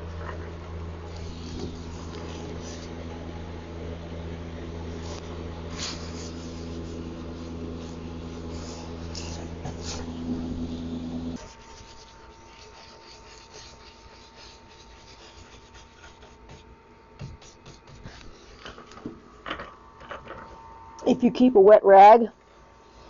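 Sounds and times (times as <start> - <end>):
low hum: 0.0 - 11.4
rubbing and scratching on wood: 1.1 - 3.0, 4.8 - 19.0.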